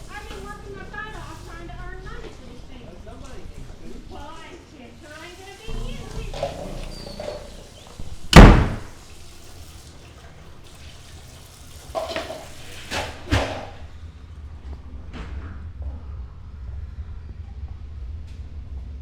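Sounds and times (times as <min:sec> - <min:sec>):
loud slam: 0:08.3 - 0:08.9.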